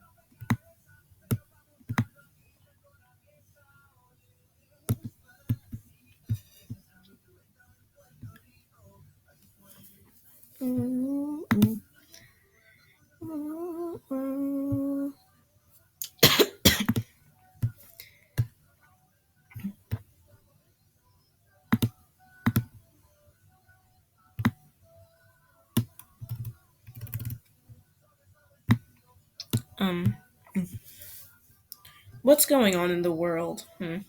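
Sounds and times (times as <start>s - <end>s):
man humming: 13.2s - 15.1s.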